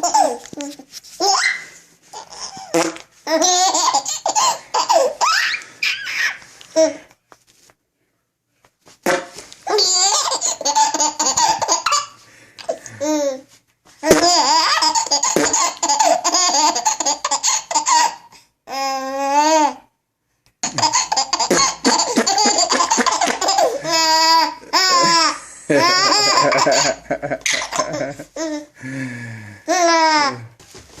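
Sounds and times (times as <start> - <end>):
baby laughing hysterically: 0.0 - 0.4, 1.2 - 6.4, 9.7 - 12.2, 14.0 - 18.3, 20.6 - 28.7
mouth-made farting noises: 2.6 - 3.1, 9.0 - 9.4, 15.2 - 15.8, 20.6 - 23.6.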